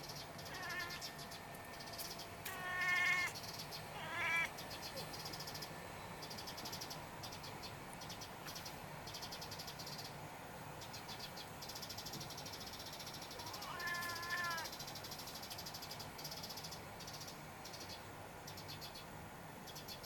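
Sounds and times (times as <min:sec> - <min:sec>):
kitten chattering: 0:02.5 - 0:03.4, 0:04.0 - 0:04.5, 0:13.3 - 0:14.7.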